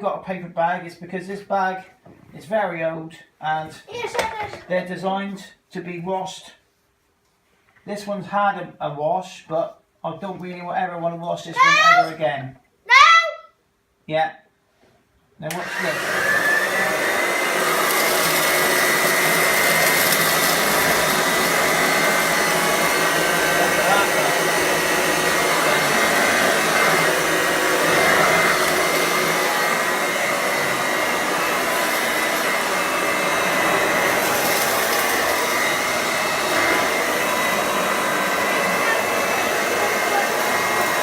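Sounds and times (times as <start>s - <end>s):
vacuum cleaner motor whine: 15.5s - 41.0s.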